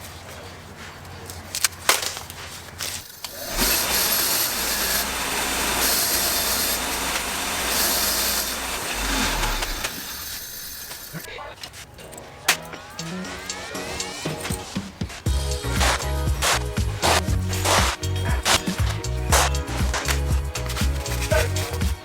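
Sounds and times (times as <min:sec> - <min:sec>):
sandblaster hissing: 0:03.0 - 0:11.3, 0:17.0 - 0:22.0.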